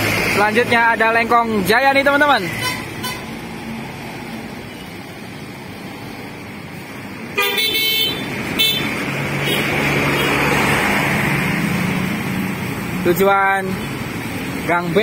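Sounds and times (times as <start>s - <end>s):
bus engine passing: 0.0s - 15.0s
road traffic: 0.0s - 15.0s
bus horn blast: 2.5s - 3.4s, 7.4s - 10.3s.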